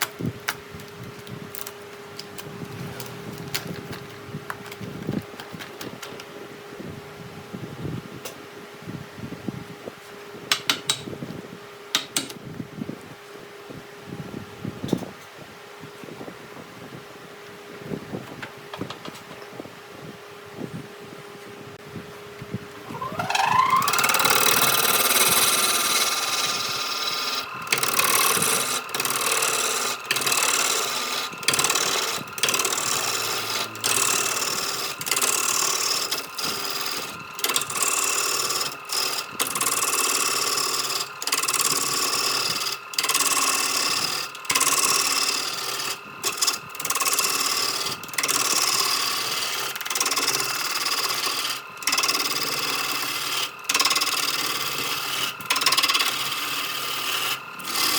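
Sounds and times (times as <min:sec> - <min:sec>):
power tool motor whine: 0:22.6 - 0:57.9
rasping cut through wood: 0:22.9 - 0:57.9.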